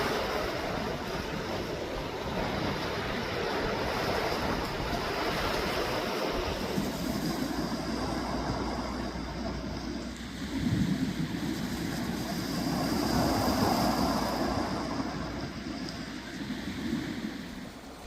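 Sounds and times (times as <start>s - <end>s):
waves washing in: 0.0s - 18.0s
low steady rumble: 6.3s - 18.0s.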